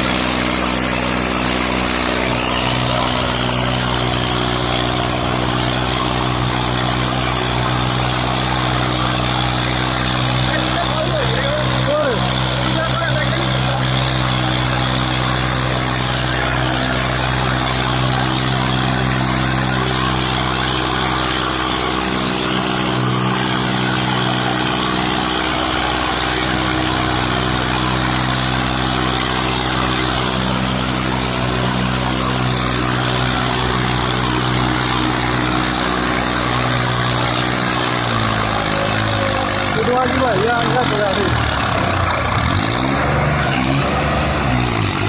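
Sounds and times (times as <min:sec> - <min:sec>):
tractor diesel engine running: 0:00.0 - 0:45.0.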